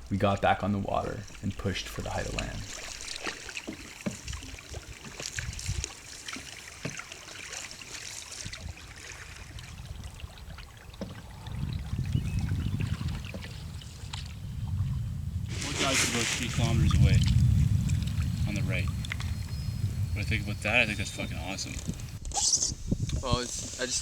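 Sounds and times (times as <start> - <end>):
canoe paddles splashing water: 0.0 - 22.2
steady low rumble: 11.2 - 22.2.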